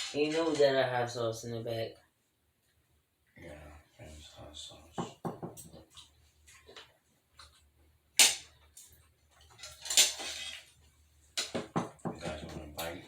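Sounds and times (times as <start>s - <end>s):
tableware knock: 5.0s - 5.6s, 11.4s - 12.2s
tableware scraping rustle: 9.5s - 10.8s.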